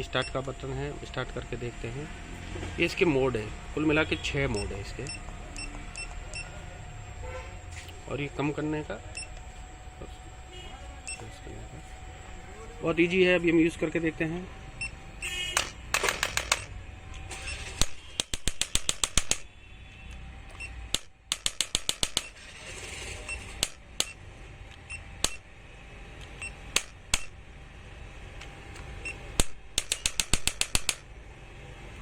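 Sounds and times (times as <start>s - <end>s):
cooling fan hum: 0.0s - 17.9s, 22.1s - 32.0s
electric adjuster gun clicking: 28.4s - 31.0s.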